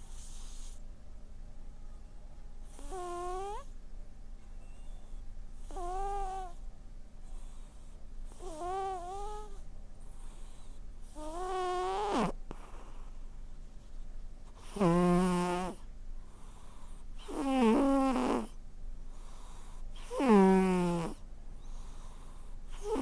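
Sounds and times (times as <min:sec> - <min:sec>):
cat snoring with squeaky whistles: 0:00.0 - 0:00.8, 0:02.6 - 0:03.7, 0:04.6 - 0:06.6, 0:07.3 - 0:09.6, 0:10.2 - 0:13.1, 0:14.6 - 0:15.8, 0:16.4 - 0:23.0
breathy hiss: 0:00.0 - 0:00.9, 0:04.6 - 0:23.0.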